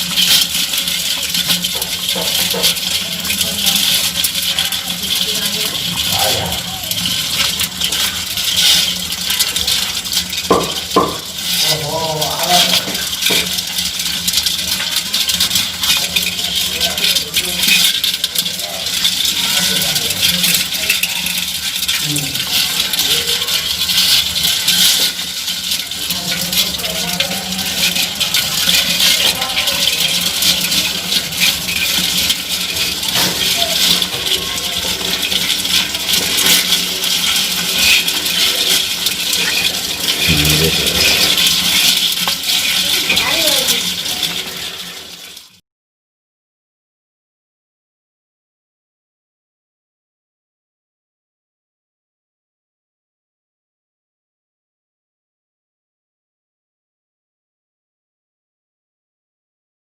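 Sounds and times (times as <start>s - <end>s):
crabs clicking and rattling: 0.0s - 45.6s.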